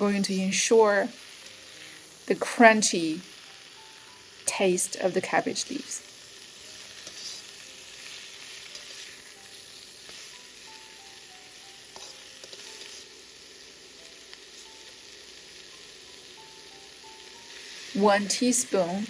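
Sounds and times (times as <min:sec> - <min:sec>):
cabbage sizzling in hot oil: 0:00.0 - 0:19.0
faint stirring ticks: 0:11.9 - 0:13.0.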